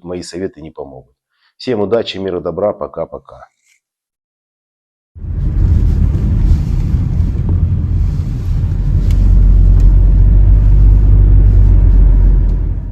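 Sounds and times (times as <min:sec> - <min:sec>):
car rumble on the move: 0:05.2 - 0:12.9
road and wind noise: 0:05.2 - 0:12.9.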